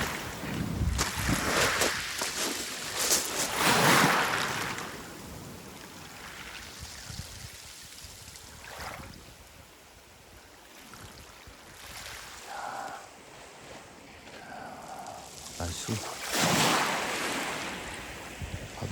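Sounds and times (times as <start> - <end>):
waves washing over pebble beach: 0.0 - 7.9, 14.8 - 18.3.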